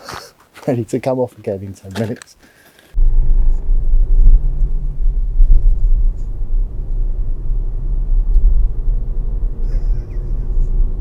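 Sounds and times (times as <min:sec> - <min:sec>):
car engine and road noise rumble: 0:02.9 - 0:11.0.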